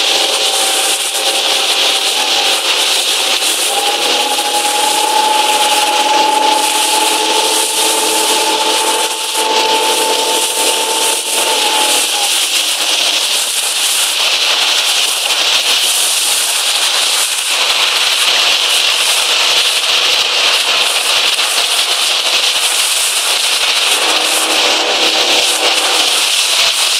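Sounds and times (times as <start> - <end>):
wind and spray rushing: 0.0 - 26.9
whistling tone: 0.1 - 13.3, 23.8 - 26.7.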